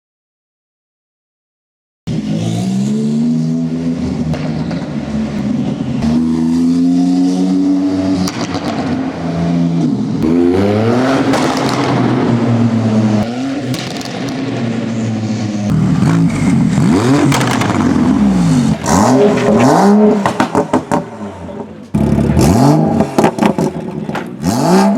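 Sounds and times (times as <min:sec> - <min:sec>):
car engine revving: 0:02.1 - 0:24.9
exhaust crackles and pops: 0:04.1 - 0:06.1, 0:08.2 - 0:09.0, 0:11.2 - 0:12.4, 0:13.6 - 0:14.8, 0:15.7 - 0:21.1, 0:21.8 - 0:24.4.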